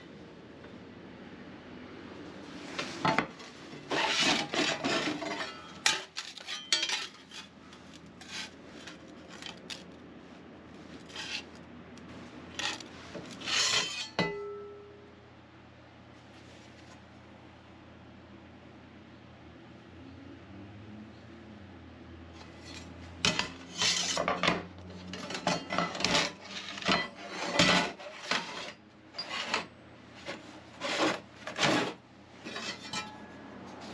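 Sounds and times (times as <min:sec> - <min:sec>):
steel plates scraping and clinking: 0:03.8 - 0:09.8, 0:11.0 - 0:11.5, 0:12.5 - 0:14.6, 0:22.4 - 0:29.7, 0:30.3 - 0:33.3
ringing metal clank: 0:13.7 - 0:15.0, 0:32.7 - 0:33.3.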